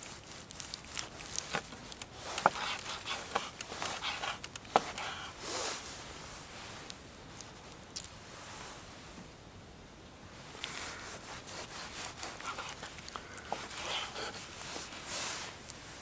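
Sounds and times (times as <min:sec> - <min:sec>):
clicks knocks and scrapes: 0:01.3 - 0:05.2, 0:12.0 - 0:14.7.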